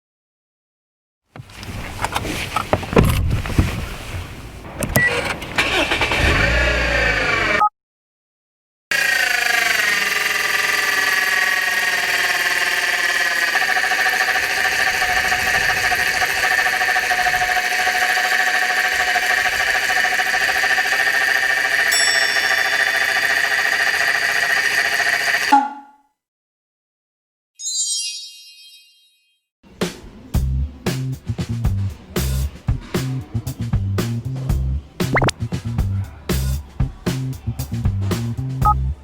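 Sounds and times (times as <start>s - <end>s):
high-pitched engine whine: 8.9s - 25.5s
car engine idling: 9.0s - 25.5s.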